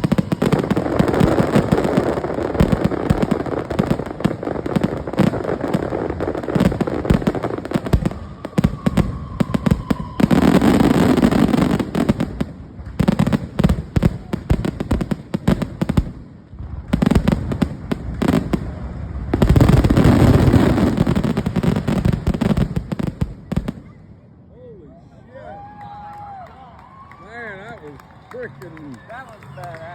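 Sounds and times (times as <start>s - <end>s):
faint firework whistle: 0.0s - 2.1s, 7.7s - 12.1s
fireworks bangs and crackles: 0.0s - 24.3s.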